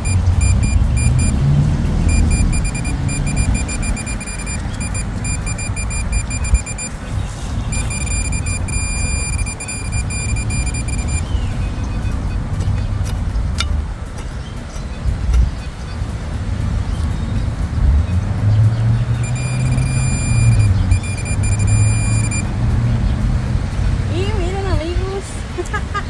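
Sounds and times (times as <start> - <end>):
metal detector beeping: 0.0 - 7.0, 7.7 - 11.4, 19.2 - 22.4
handling and digging noise: 12.2 - 15.7.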